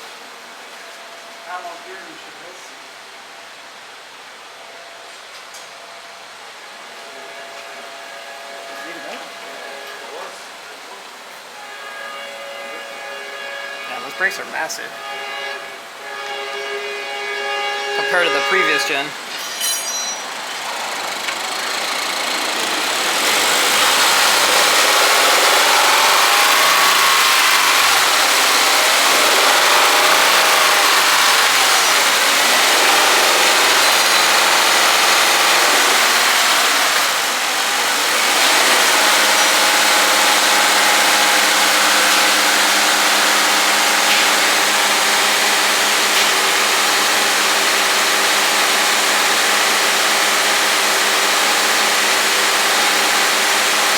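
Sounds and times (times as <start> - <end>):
car engine on dyno: 15.0 - 19.3, 20.1 - 53.9.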